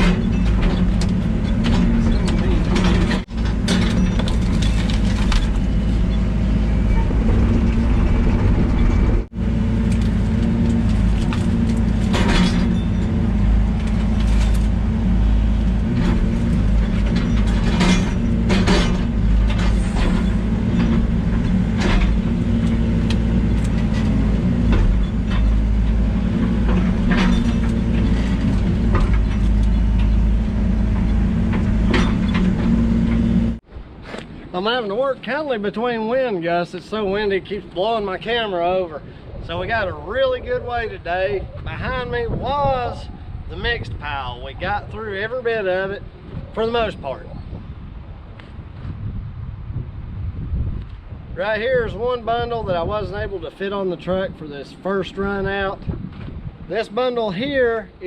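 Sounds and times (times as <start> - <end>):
diesel engine running: 0.0 - 33.6.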